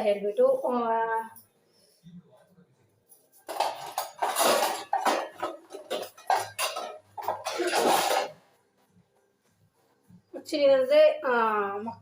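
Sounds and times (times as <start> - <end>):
metal utensils clattering on pan: 3.5 - 8.4.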